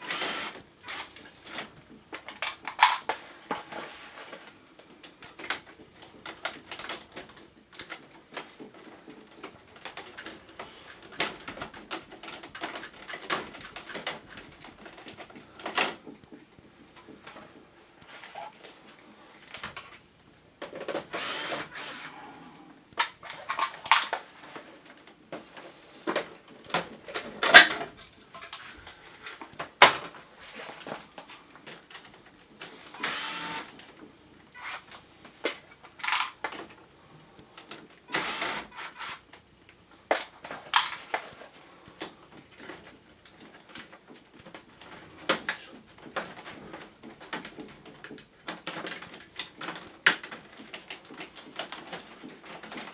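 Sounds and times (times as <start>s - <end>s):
hands working on plastic casing: 0.0s - 18.8s.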